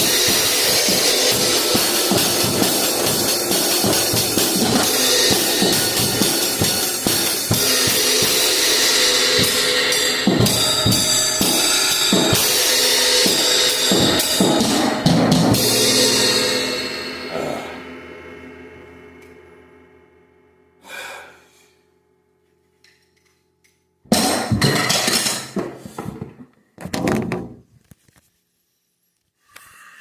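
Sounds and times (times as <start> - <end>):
cymbals washing: 0.0 - 19.7.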